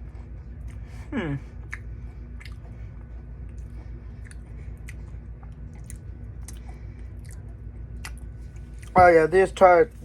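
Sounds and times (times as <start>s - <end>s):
chewing crisps crunching: 1.6s - 9.0s.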